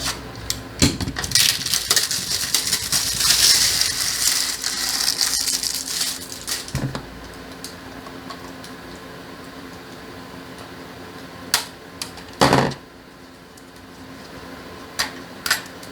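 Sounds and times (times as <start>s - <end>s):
plastic wrapping crinkling and tearing: 1.0s - 7.1s.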